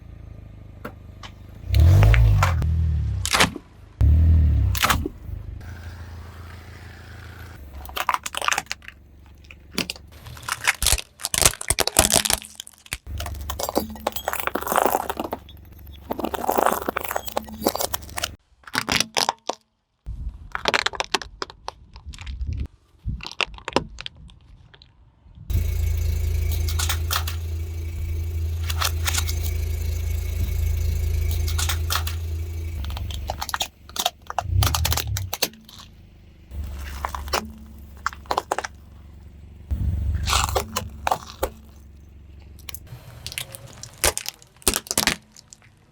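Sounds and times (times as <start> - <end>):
car engine humming: 0.0 - 11.3, 13.1 - 18.4, 25.5 - 45.4
tyres crushing crunchy objects: 1.7 - 19.6, 20.4 - 24.9, 25.5 - 45.9.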